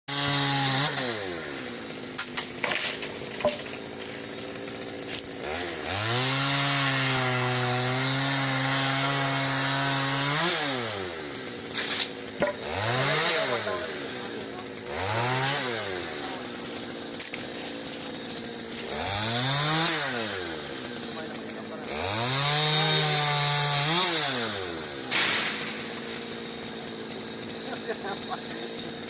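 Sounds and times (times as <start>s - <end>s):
chainsaw revving: 0.1s - 29.0s
sharp knocks: 12.4s - 12.7s.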